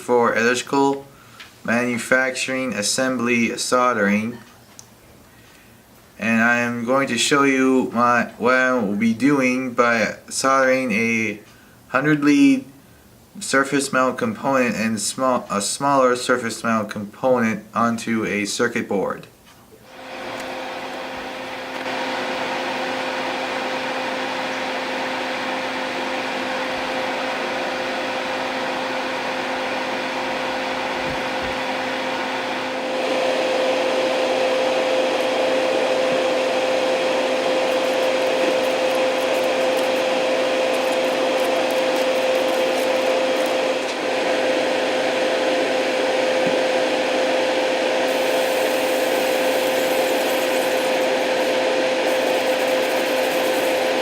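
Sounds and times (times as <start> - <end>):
small electric blower whirring: 19.9 - 22.0, 34.9 - 44.4, 47.8 - 54.0.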